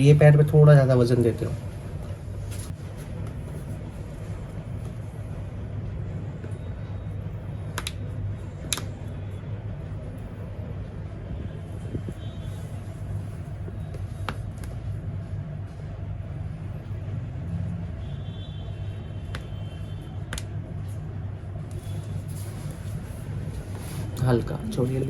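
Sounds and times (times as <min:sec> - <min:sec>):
low background rumble: 0:00.0 - 0:25.0.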